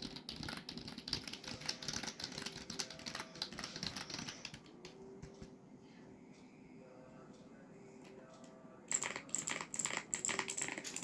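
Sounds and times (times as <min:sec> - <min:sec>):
computer keyboard typing: 0:00.0 - 0:05.4, 0:08.9 - 0:11.0.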